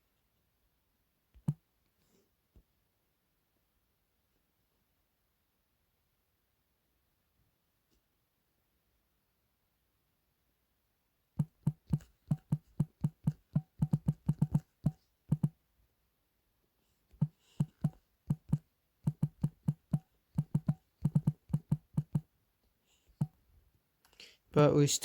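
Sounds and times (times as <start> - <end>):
typing on keyboard: 11.4 - 15.5, 17.2 - 22.3.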